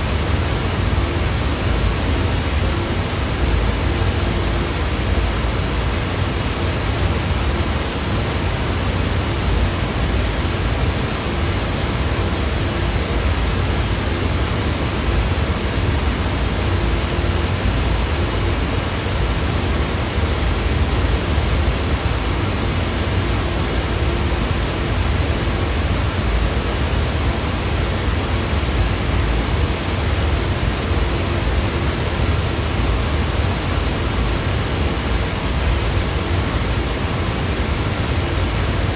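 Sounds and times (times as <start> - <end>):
white noise hiss: 0.0 - 38.9.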